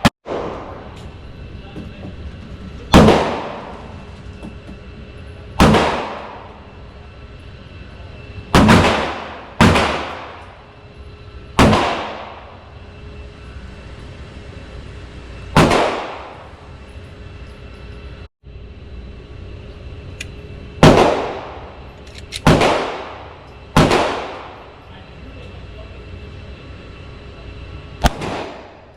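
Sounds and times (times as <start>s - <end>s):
pistol shots with ringing echo: 2.9s - 3.7s, 5.6s - 6.6s, 8.5s - 10.5s, 11.6s - 12.6s, 15.6s - 16.4s, 20.8s - 21.7s, 22.4s - 24.7s, 28.0s - 28.8s.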